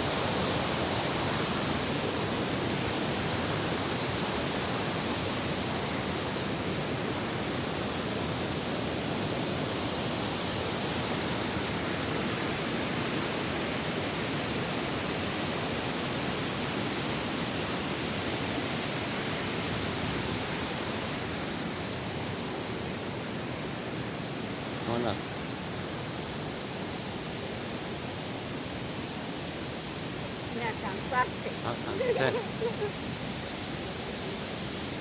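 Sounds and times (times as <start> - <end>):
waterfall rushing: 11.9 - 35.0.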